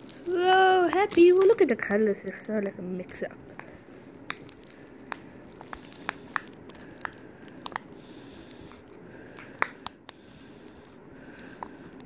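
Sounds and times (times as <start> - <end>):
packaging handling noise: 0.0 - 11.0
plastic toys clicking: 0.2 - 1.7.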